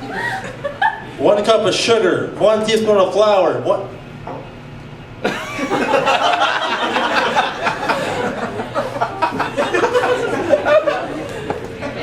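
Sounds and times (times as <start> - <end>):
audience laughing: 5.2 - 12.0.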